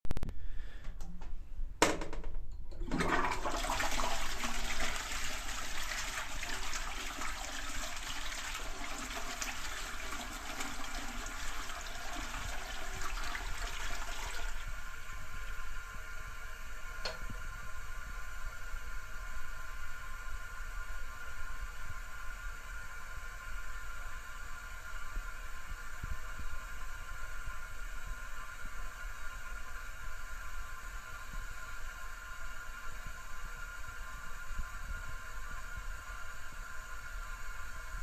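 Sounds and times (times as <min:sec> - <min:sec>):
toilet flush click: 0:01.9 - 0:14.7, 0:17.0 - 0:17.4.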